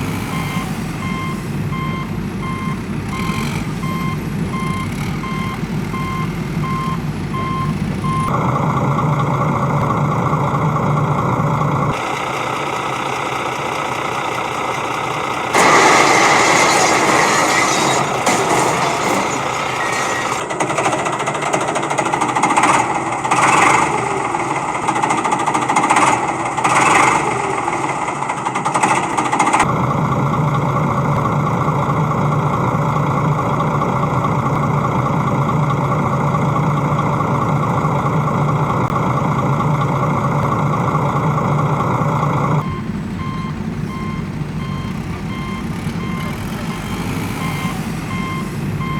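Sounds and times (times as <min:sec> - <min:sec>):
truck reversing beeper: 0:00.0 - 0:25.2, 0:36.3 - 0:48.9
diesel engine running: 0:00.0 - 0:48.9.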